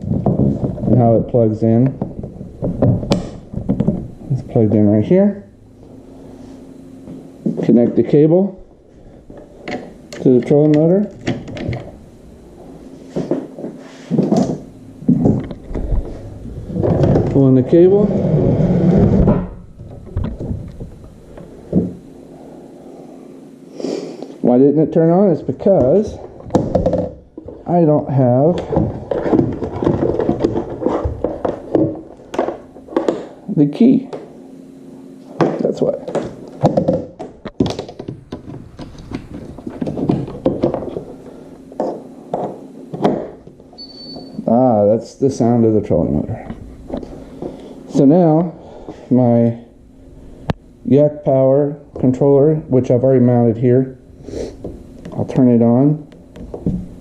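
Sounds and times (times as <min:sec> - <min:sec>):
cable scraping plastic hull: 0:15.2 - 0:21.0.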